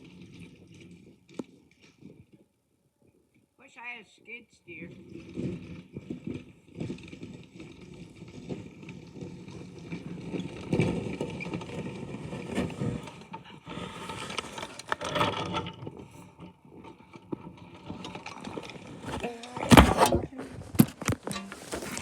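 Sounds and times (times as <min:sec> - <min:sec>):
snow plow blade scraping snow: 0:04.8 - 0:22.0.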